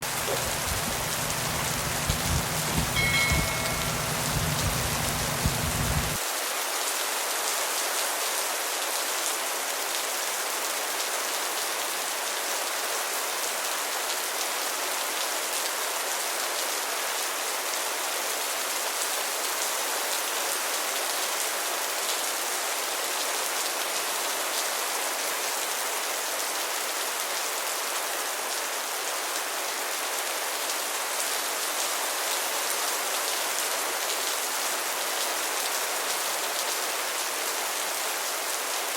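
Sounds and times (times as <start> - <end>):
steady rain hissing: 0.0 - 38.9
low rumble: 0.1 - 6.2.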